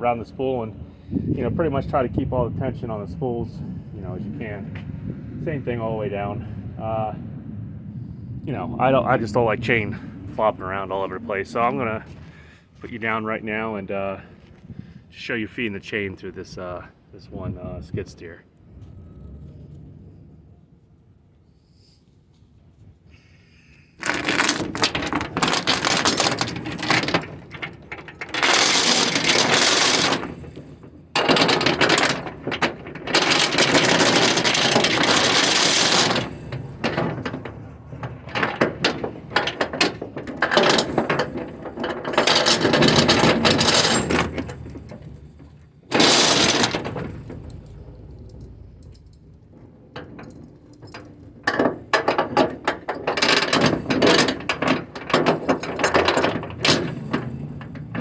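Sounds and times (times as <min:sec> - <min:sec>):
chain rattling and clinking: 0:24.0 - 0:58.0.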